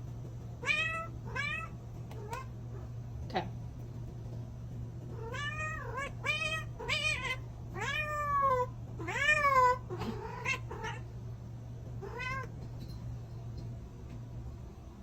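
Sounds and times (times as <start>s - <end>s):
low hum: 0.0s - 15.0s
cat meowing: 0.6s - 2.5s, 5.1s - 11.1s, 12.0s - 12.5s.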